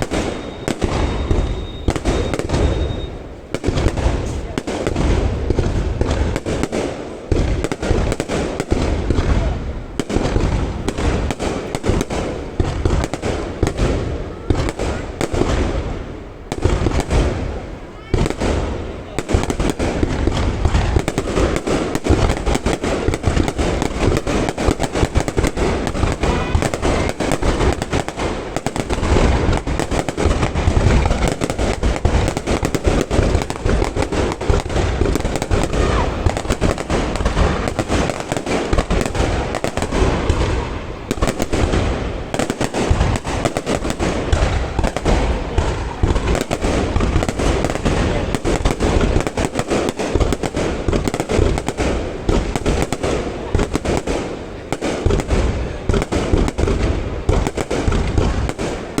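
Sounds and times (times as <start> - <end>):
fireworks bursting: 0.0 - 59.0.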